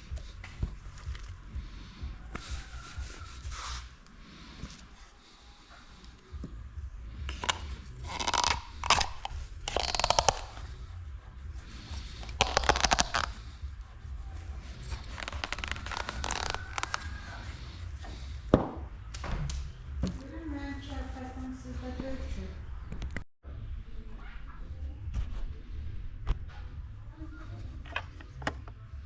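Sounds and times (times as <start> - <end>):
tools scraping and rubbing: 2.3 - 5.2, 7.3 - 18.5.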